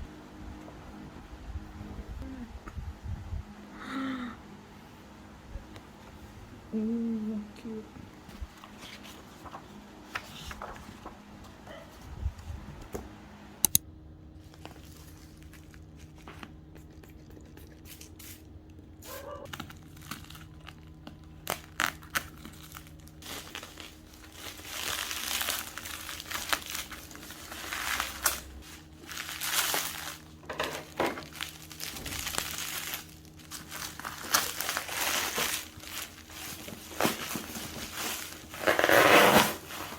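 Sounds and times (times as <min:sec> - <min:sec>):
plastic wrapping crinkling and tearing: 0:08.4 - 0:11.1, 0:14.4 - 0:18.5, 0:19.4 - 0:39.9.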